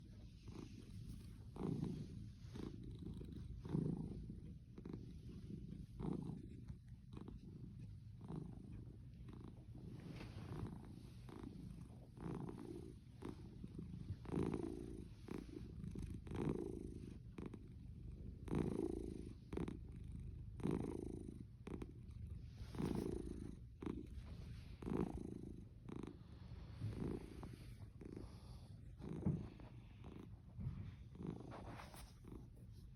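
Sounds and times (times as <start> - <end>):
cat purring: 0.0 - 32.9.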